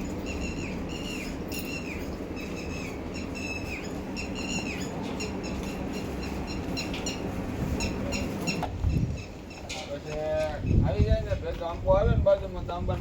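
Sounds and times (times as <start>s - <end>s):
steady low hum: 0.0s - 9.6s
bird calling: 0.0s - 10.9s.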